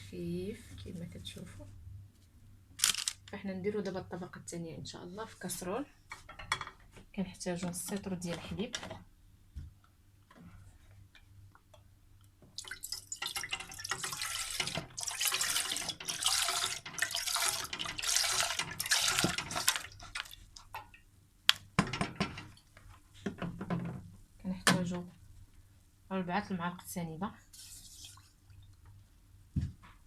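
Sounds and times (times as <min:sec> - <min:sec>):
milk pouring into saucepan: 0:12.6 - 0:20.8, 0:27.5 - 0:28.4.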